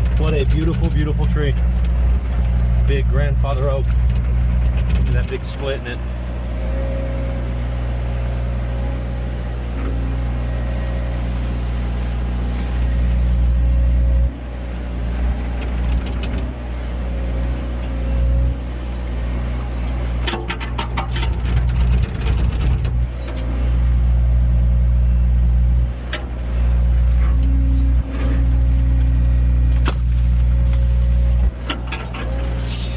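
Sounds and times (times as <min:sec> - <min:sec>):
heavy machine engine running: 0:00.0 - 0:32.9.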